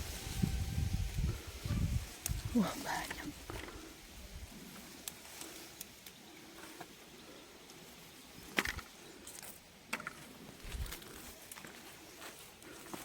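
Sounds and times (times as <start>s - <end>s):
wind buffeting microphone: 0.0s - 4.5s.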